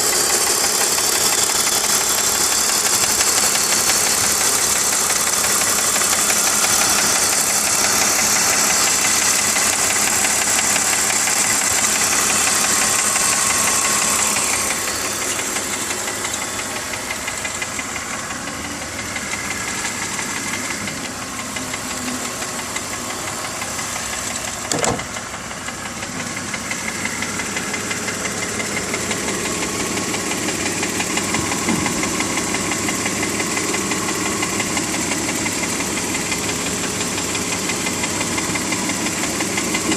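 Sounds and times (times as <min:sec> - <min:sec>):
car engine idling: 0:00.0 - 0:39.9
rapid engine ticking: 0:00.0 - 0:39.9.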